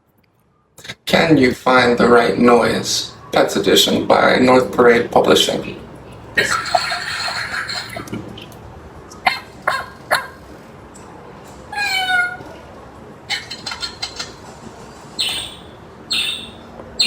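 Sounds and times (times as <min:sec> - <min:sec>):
pitched animal call: 0:09.2 - 0:10.4, 0:11.7 - 0:12.6
animal sounds from a toy sound book: 0:11.7 - 0:12.6.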